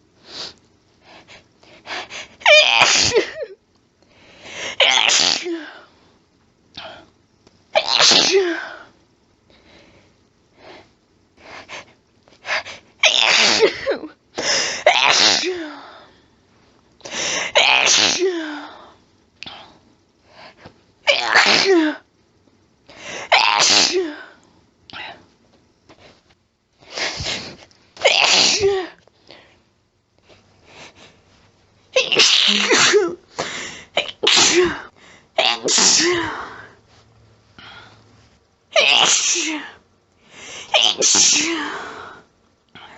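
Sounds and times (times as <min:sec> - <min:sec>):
person sniffing: 0:00.2 - 0:00.6
person sneezing: 0:02.4 - 0:03.5, 0:04.7 - 0:05.9, 0:07.8 - 0:08.9, 0:13.0 - 0:15.9, 0:17.4 - 0:18.7, 0:21.1 - 0:22.0, 0:23.2 - 0:24.4, 0:26.9 - 0:29.0, 0:32.0 - 0:36.7, 0:38.8 - 0:39.8, 0:40.6 - 0:42.0.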